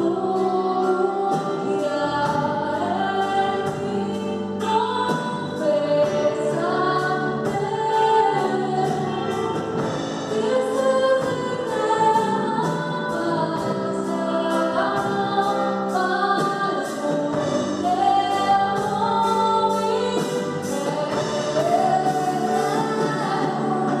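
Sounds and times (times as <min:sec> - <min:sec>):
instrumental backing with beat: 0:00.0 - 0:24.0
people singing worship song: 0:00.0 - 0:24.0.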